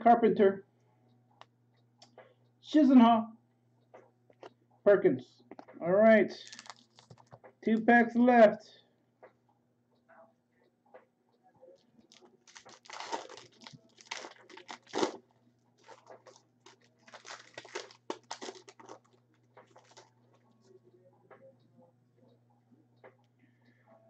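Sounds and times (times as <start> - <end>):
wrapper tearing and crinkling: 6.4 - 7.3, 12.1 - 15.2, 15.8 - 20.1.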